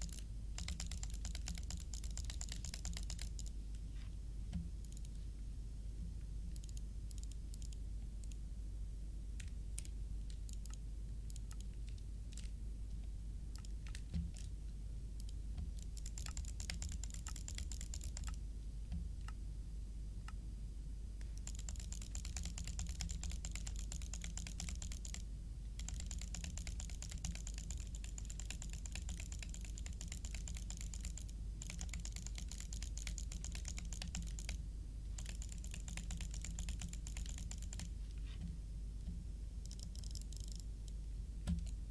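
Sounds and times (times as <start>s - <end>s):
computer keyboard clicking: 0.0s - 3.6s, 4.5s - 5.2s, 6.5s - 8.4s, 9.4s - 12.6s, 13.5s - 14.6s, 15.2s - 18.4s, 21.2s - 34.6s, 35.2s - 38.0s, 39.6s - 40.7s, 41.4s - 41.8s
steady low hum: 0.0s - 41.9s.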